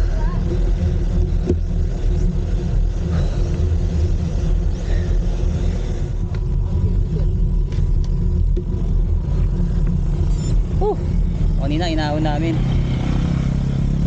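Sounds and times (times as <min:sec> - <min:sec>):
wind and road noise: 0:00.0 - 0:14.0.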